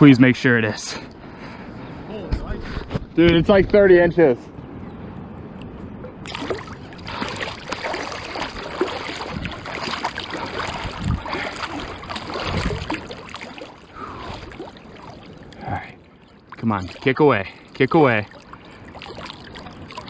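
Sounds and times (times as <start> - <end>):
water splashing and sloshing: 4.5 - 20.0.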